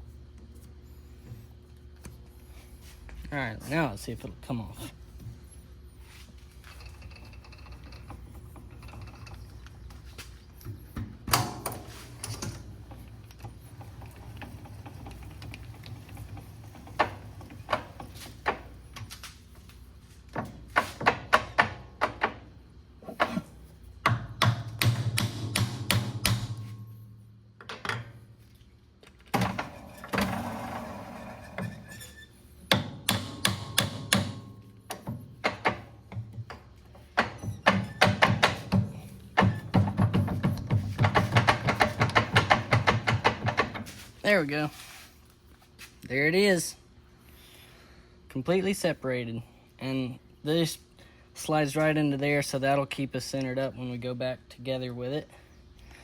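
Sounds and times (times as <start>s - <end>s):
low steady hum: 0.0s - 56.0s
knocks and thunks on metal: 23.1s - 26.8s, 32.7s - 43.9s.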